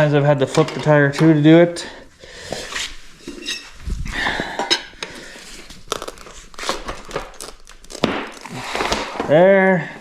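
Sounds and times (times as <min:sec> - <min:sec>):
rubber tyre creaking and scraping: 0:05.4 - 0:09.7.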